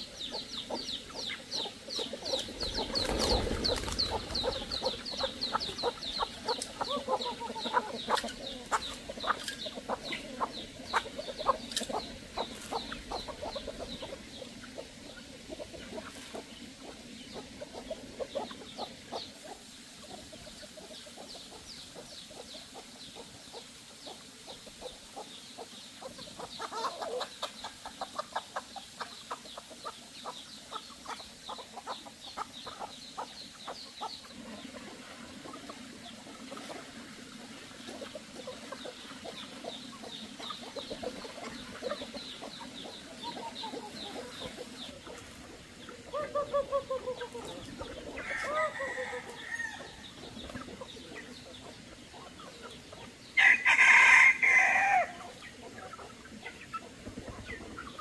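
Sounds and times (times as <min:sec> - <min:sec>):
chickens clucking: 0:00.0 - 0:58.0
drawn-out falling chicken calls: 0:00.6 - 0:17.0, 0:37.9 - 0:51.5, 0:53.0 - 0:58.0.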